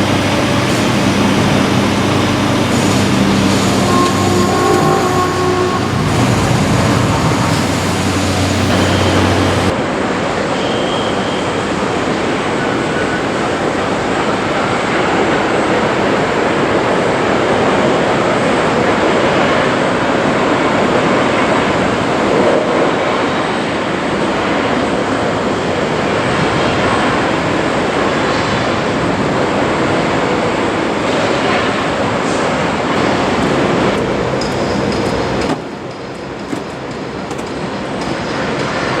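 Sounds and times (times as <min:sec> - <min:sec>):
steady rushing background noise: 0:00.0 - 0:39.0.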